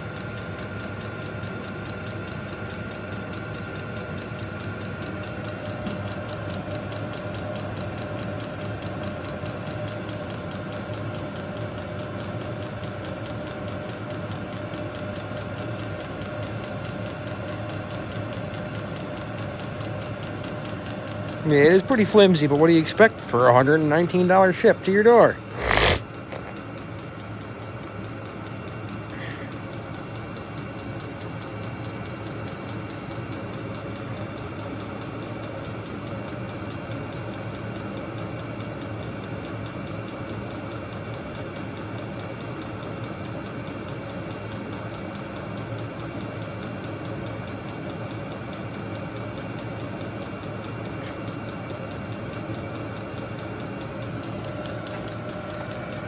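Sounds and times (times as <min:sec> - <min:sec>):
heater blowers whirring: 0:00.0 - 0:56.0
fuel pump ticking: 0:12.4 - 0:25.4.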